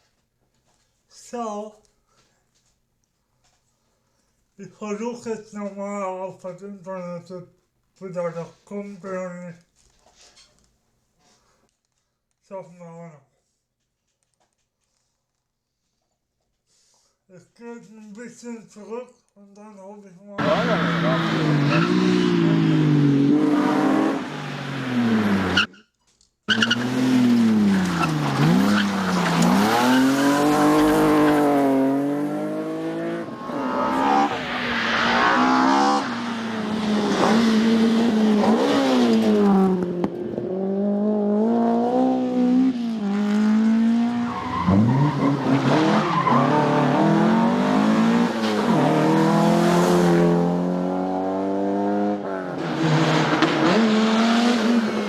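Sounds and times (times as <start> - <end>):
rally cars at full throttle: 20.4 - 25.8, 26.5 - 55.0.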